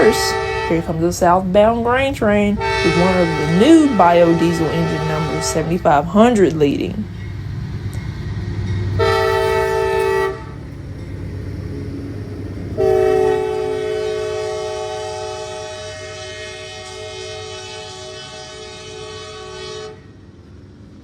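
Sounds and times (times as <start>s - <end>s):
locomotive air horn blasts: 0.0s - 7.0s, 8.9s - 10.7s, 12.7s - 20.1s
train rumbling: 0.0s - 21.0s.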